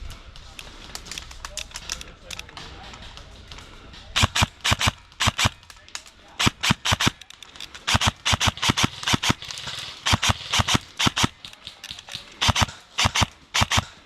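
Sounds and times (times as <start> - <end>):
airsoft gun firing pops: 10.1 - 14.0.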